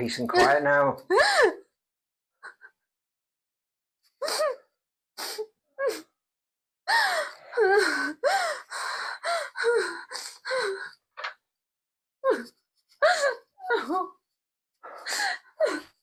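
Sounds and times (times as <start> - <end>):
person sobbing and gasping: 1.1 - 1.6, 6.9 - 10.9, 14.9 - 16.0.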